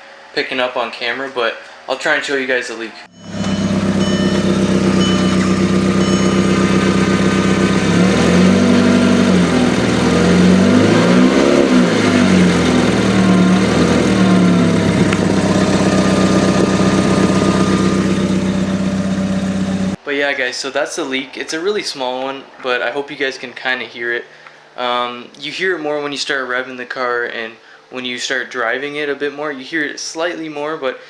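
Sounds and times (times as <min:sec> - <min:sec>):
car engine idling: 0:03.1 - 0:20.0.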